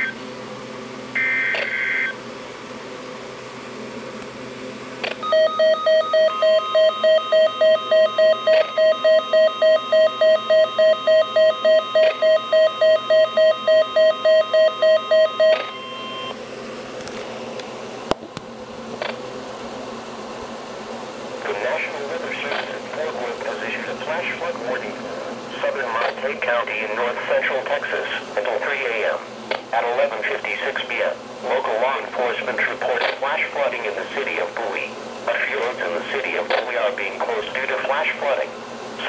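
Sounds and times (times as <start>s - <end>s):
screeching data tones: 1.2s - 2.2s.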